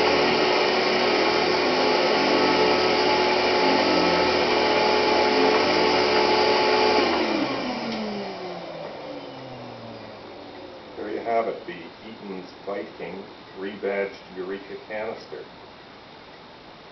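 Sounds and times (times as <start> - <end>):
vacuum cleaner running: 0.0 - 13.7.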